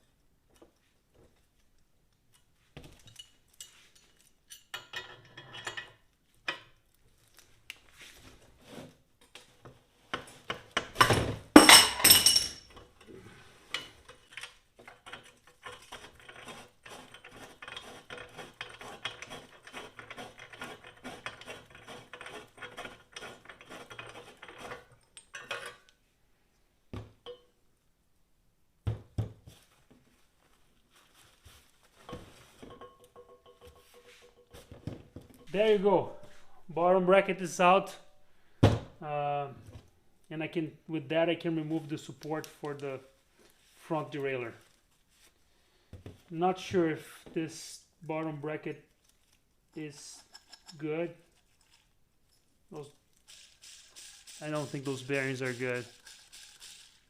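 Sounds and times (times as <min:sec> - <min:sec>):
steel tools clinking on metal: 0:11.6 - 0:12.7.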